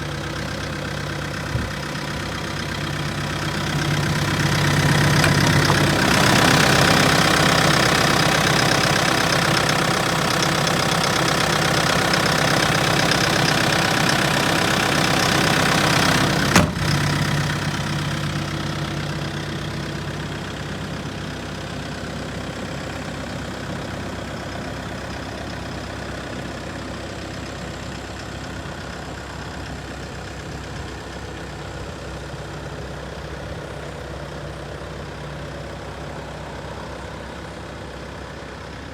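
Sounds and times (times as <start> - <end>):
diesel engine running: 0.0 - 38.9
sharp click: 5.2 - 5.9.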